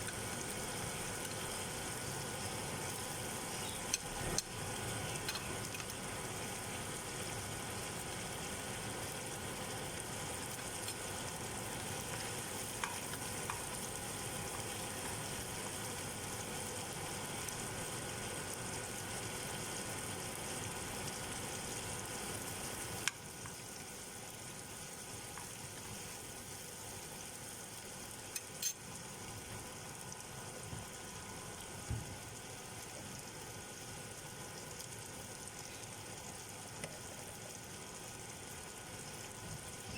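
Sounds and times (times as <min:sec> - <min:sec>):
food sizzling in a pan: 0:00.0 - 0:39.9.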